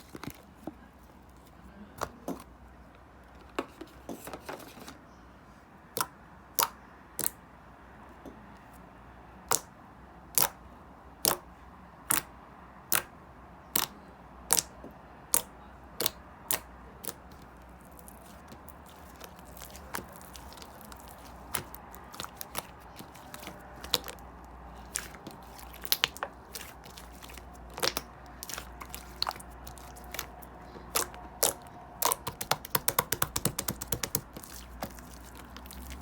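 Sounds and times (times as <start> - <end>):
slime popping and clicking: 24.9 - 35.9.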